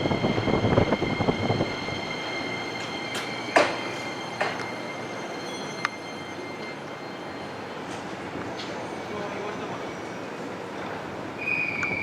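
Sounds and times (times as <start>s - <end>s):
electric train whine: 0.0s - 12.0s
train wheels clattering: 2.7s - 4.9s.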